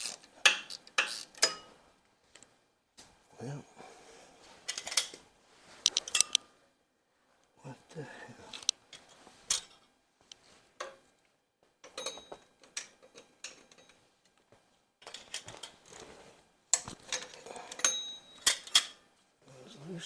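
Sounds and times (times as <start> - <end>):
metal tools clinking on engine parts: 17.1 - 19.0.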